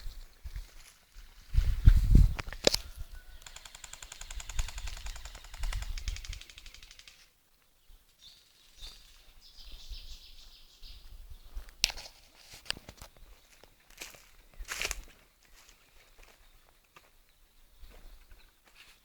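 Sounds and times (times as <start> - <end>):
airsoft gun rapid burst: 3.4 - 7.2.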